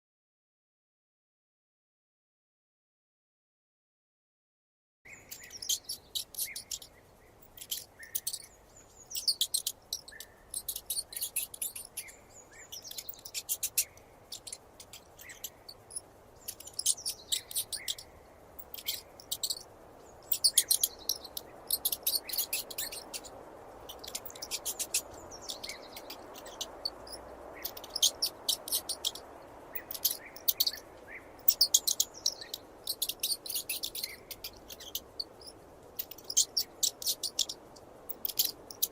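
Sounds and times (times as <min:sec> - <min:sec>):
faint steady hiss: 0:05.1 - 0:38.9
mouse squeaking: 0:05.3 - 0:08.5, 0:09.1 - 0:12.1, 0:12.7 - 0:38.9.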